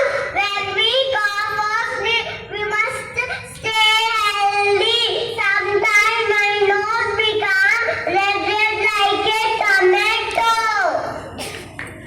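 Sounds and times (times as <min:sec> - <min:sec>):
child singing: 0:00.0 - 0:11.0.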